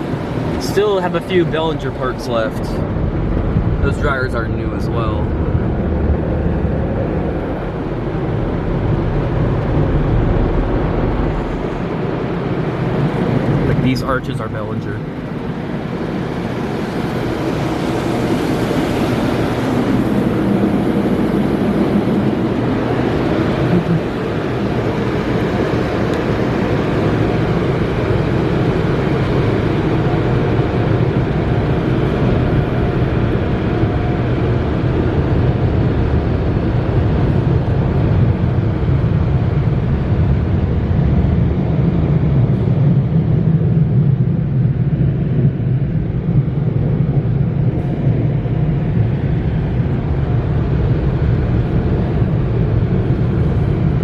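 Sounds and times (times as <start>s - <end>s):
low hum: 0.0s - 54.0s
dryer blowers roaring: 15.0s - 39.3s.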